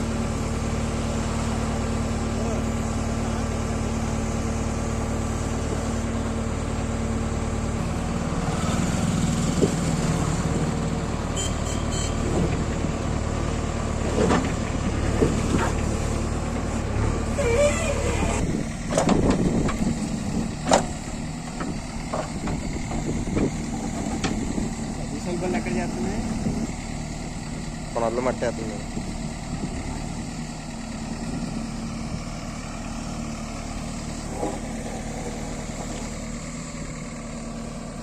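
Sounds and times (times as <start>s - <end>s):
diesel engine running: 0.0s - 38.0s
machine knocks and clanks: 18.9s - 19.8s, 20.6s - 24.4s.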